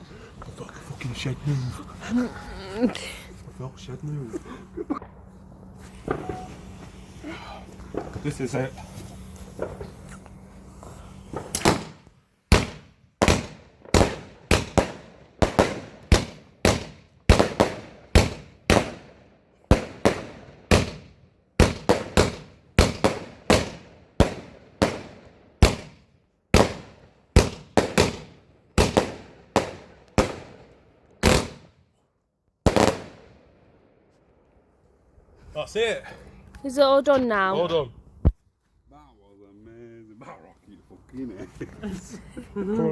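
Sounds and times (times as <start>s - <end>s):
fireworks bangs: 5.0s - 7.2s, 7.8s - 10.1s, 11.3s - 31.7s, 32.6s - 33.4s.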